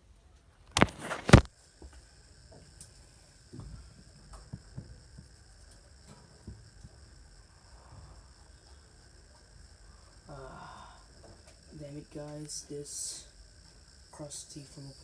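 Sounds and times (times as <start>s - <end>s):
faint high hiss: 0.0s - 15.0s
light taps and handling noises: 0.7s - 7.1s.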